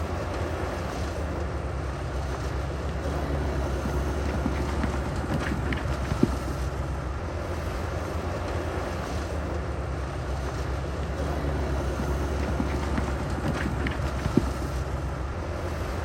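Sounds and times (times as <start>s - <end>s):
heavy diesel engine running: 0.0s - 16.0s.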